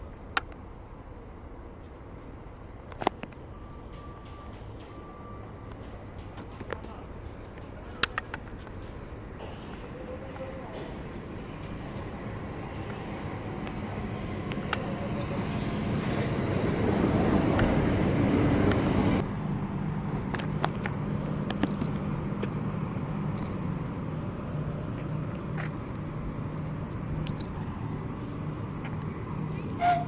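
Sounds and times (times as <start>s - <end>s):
vehicle rumble: 0.0s - 30.0s
low engine drone: 3.2s - 30.0s.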